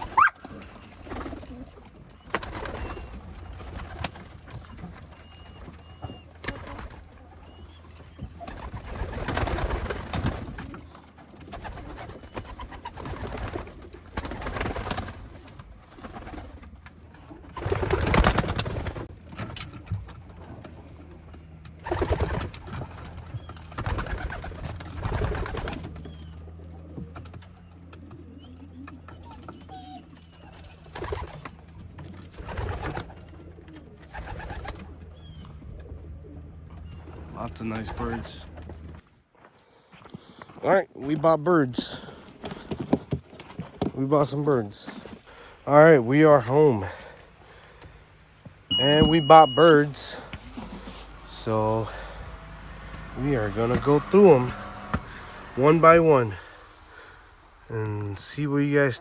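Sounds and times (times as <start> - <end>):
rustling bursts: 0.0 - 7.5, 8.3 - 39.2
pigeons cooing: 0.0 - 39.0, 41.8 - 58.3.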